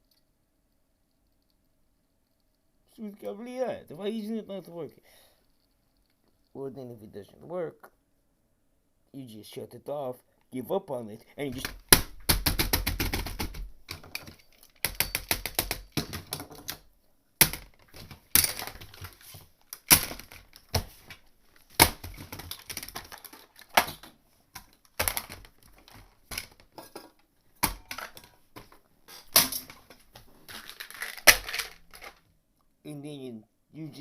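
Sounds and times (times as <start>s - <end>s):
hands tapping laptop keyboard: 11.6s - 16.7s
hard knocks on laptop case: 11.8s - 13.7s.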